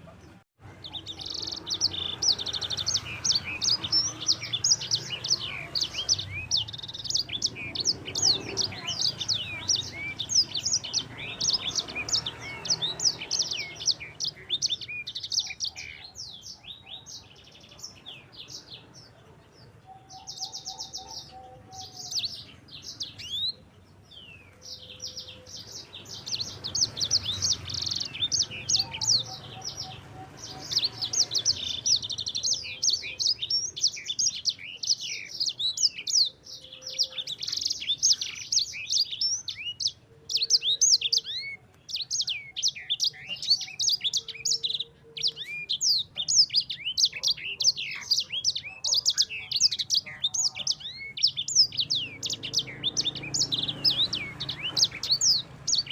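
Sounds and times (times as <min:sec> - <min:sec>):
finch singing chirps and trills: 0:00.0 - 0:55.9.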